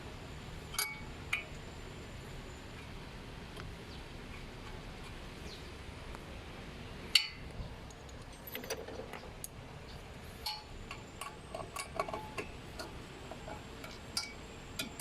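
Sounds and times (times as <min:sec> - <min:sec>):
metal clinks of tools and screws: 0:07.2 - 0:09.2.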